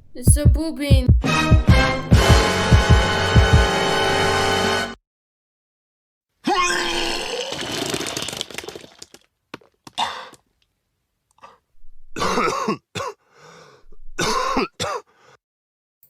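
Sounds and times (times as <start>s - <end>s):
person coughing: 12.2s - 13.2s, 14.2s - 15.1s.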